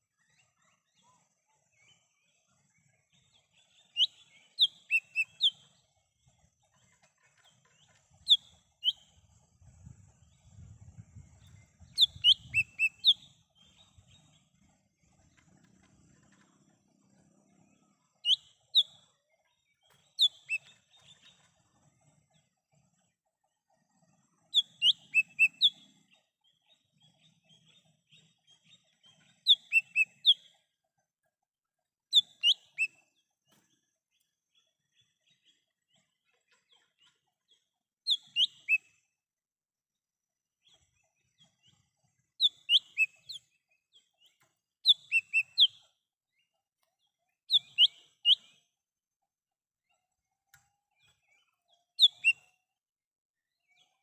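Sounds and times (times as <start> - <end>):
bird whistled calls: 12.0 - 13.3, 32.2 - 32.9, 38.1 - 38.8, 42.4 - 43.2, 44.9 - 45.8, 47.5 - 48.5, 52.0 - 52.4.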